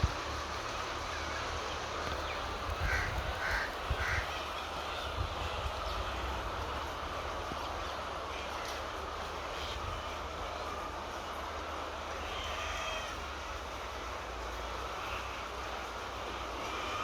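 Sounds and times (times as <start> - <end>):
crow cawing: 2.8 - 4.3.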